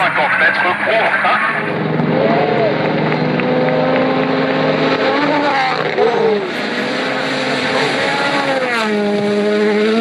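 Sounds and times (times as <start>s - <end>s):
rally car engine running hard: 0.0s - 10.0s.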